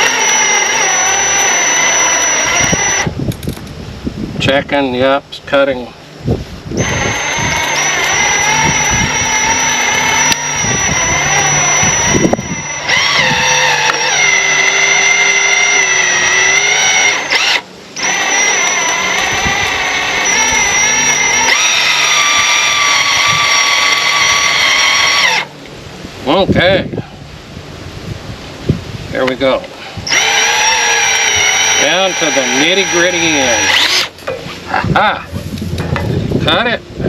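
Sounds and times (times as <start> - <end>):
tractor engine under load: 0.0 - 3.5, 6.8 - 25.5
wire stripper high whine: 0.0 - 27.8, 28.4 - 37.0.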